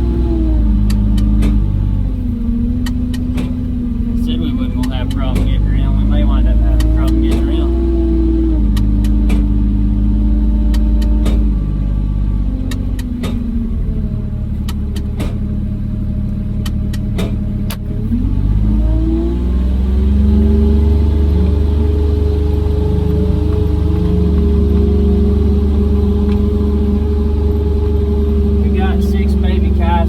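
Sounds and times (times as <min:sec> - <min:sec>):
diesel utility vehicle engine: 0:00.0 - 0:30.0
sharp knocks and rattles: 0:02.8 - 0:04.2, 0:14.6 - 0:15.7, 0:16.5 - 0:17.9.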